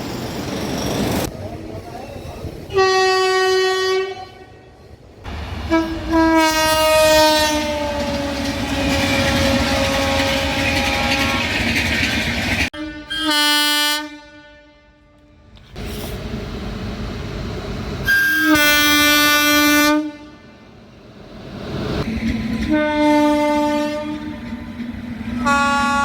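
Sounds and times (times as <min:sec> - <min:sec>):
passing train clatter: 0:00.0 - 0:12.8, 0:15.1 - 0:26.0
train horn blasts: 0:02.7 - 0:04.6, 0:05.7 - 0:11.6, 0:12.7 - 0:15.5, 0:18.0 - 0:20.4, 0:22.6 - 0:24.5, 0:25.4 - 0:26.0.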